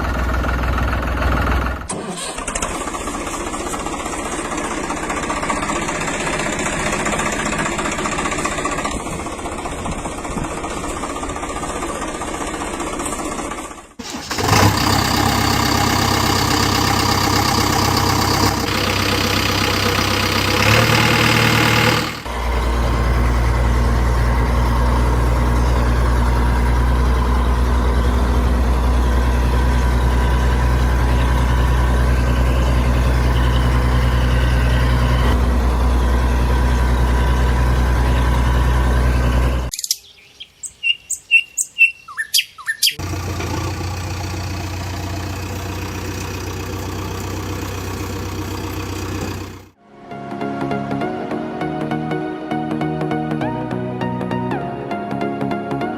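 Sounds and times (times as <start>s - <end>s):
tractor engine idling: 0.0s - 39.8s, 42.8s - 49.8s
bird chirps: 39.7s - 43.0s.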